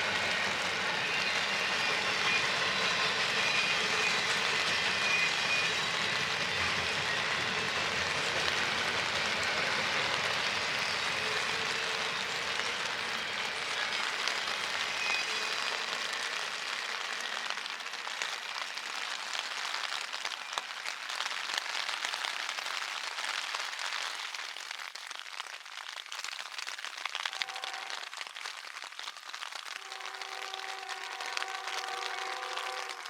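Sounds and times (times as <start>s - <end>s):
train rumble: 0.0s - 21.1s, 29.8s - 33.0s
freezing rain and sleet pattering: 0.0s - 33.0s.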